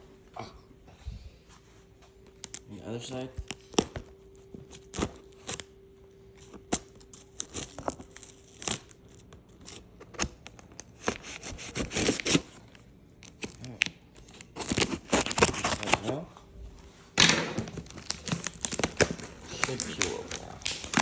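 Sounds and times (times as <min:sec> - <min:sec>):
packing tape tearing: 0:02.4 - 0:02.6, 0:03.4 - 0:05.7, 0:06.4 - 0:16.2, 0:17.2 - 0:21.0.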